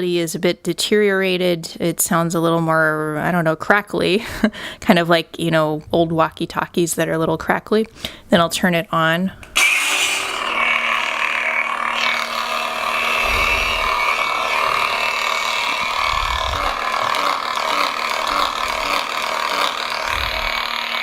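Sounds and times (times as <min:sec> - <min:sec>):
crackly lightsaber hum: 0:09.4 - 0:21.0.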